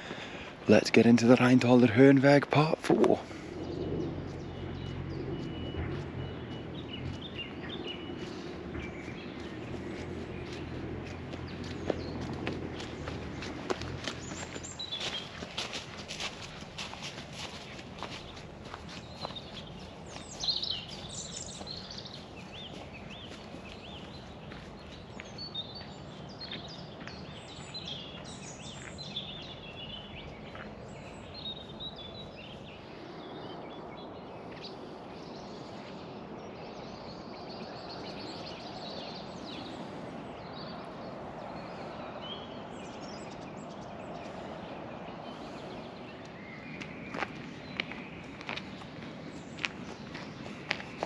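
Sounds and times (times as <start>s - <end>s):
outdoor background noise: 0.0s - 51.0s
songbirds chirping: 0.0s - 51.0s
footsteps: 4.2s - 29.0s, 46.8s - 51.0s.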